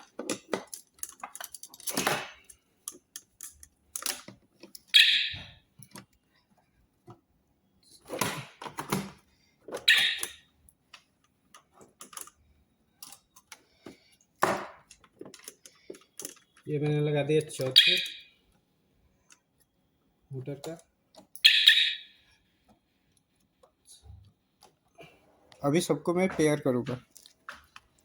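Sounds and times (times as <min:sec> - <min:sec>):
plastic clicks and rattles: 0:00.0 - 0:05.0, 0:10.9 - 0:13.7, 0:14.8 - 0:17.6
high-pitched chirps: 0:17.7 - 0:18.4, 0:21.4 - 0:22.2.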